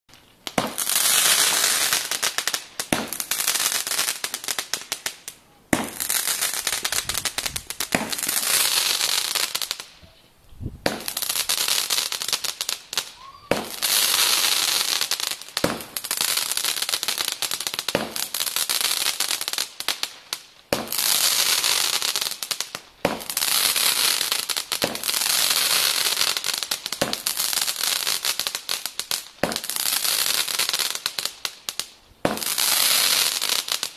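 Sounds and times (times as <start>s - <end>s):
fireworks crackling: 0.1s - 33.9s
fireworks bangs: 0.4s - 10.0s, 10.8s - 20.1s, 32.2s - 33.9s.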